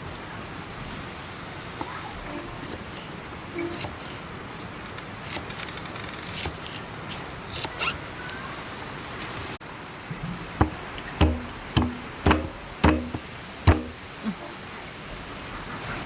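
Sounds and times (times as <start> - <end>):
sharp knocks with low thud: 10.6 - 14.0.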